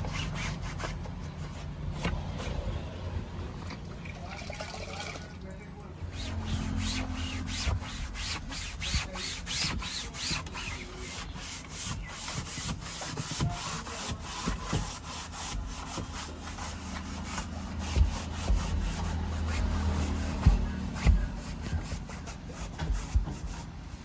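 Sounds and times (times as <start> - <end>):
scrubbing fabric with rubbing strokes: 0.0 - 2.8, 6.0 - 24.0.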